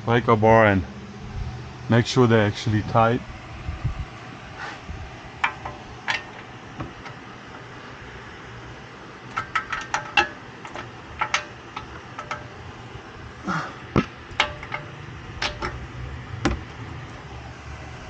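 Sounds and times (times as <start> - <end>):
hand tools and metal parts clinking: 5.4 - 7.2, 9.2 - 12.7, 14.0 - 15.9.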